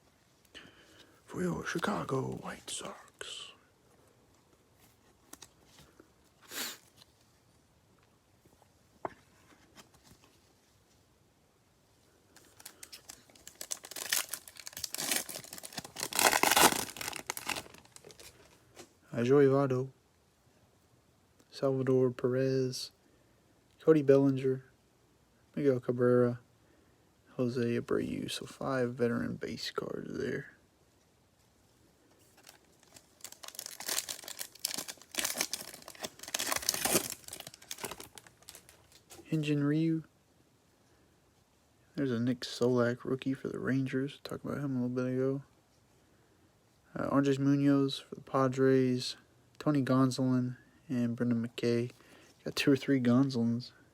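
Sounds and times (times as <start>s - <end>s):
foil wrapper tearing and crinkling: 12.4s - 18.4s, 32.4s - 39.0s.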